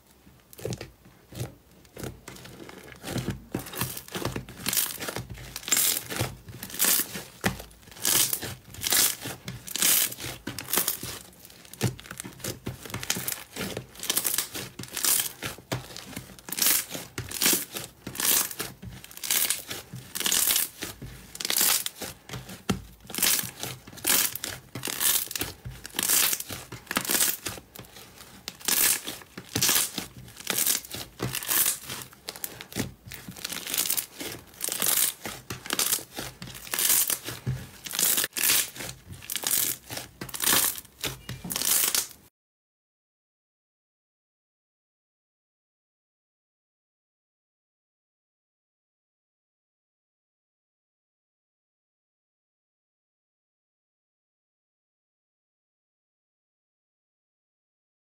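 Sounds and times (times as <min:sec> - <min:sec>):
slime squeezed crackling: 0:23.1 - 0:42.2.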